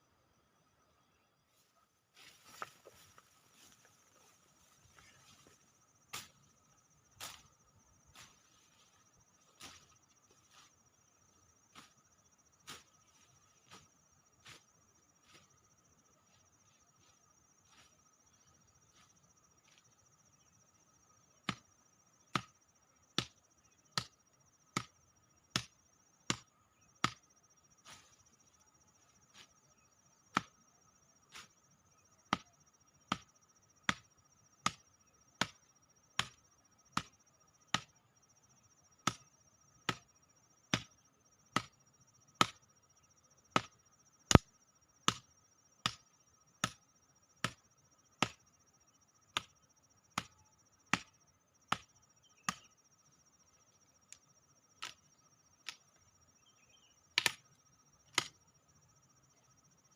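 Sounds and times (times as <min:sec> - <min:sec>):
chopping strikes: 0:57.2 - 0:57.4.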